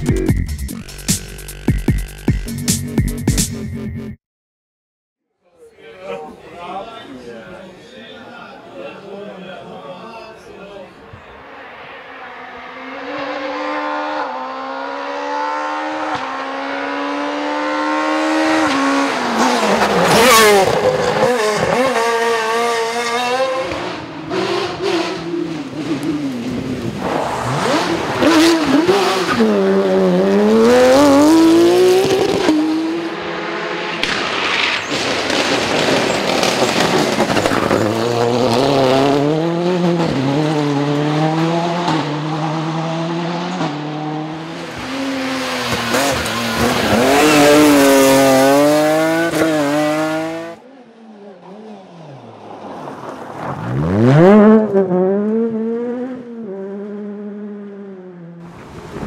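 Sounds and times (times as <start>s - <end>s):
rally car engine revving hard: 12.2s - 50.6s, 53.6s - 59.0s.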